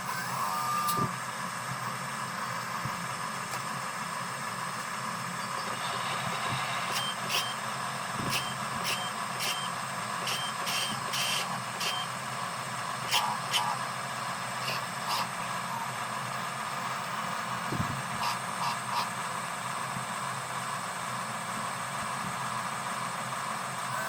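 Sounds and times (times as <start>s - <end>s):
small electric motors and gearing: 0.0s - 1.2s, 5.4s - 12.2s, 13.0s - 16.0s.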